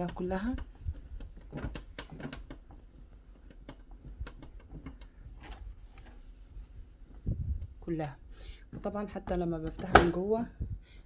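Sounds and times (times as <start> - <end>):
cloth wiping panels: 0.4 - 8.2.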